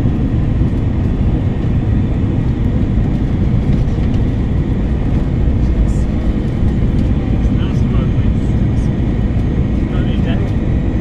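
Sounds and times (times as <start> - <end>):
airplane cabin engine rumble: 0.0 - 11.0.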